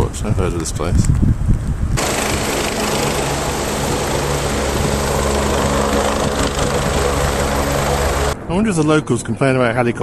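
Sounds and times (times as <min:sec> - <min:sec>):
constant low hum: 0:01.5 - 0:09.4
helicopter rotor and turbine: 0:02.0 - 0:08.4.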